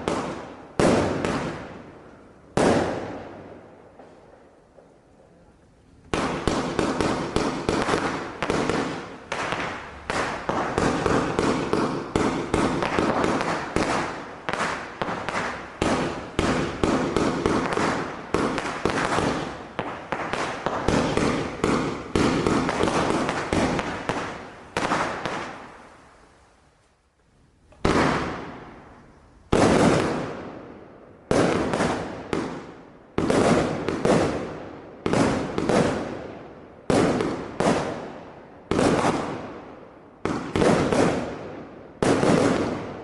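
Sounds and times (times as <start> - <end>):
firework battery firing: 6.1 - 26.0, 27.7 - 28.9, 29.5 - 30.4.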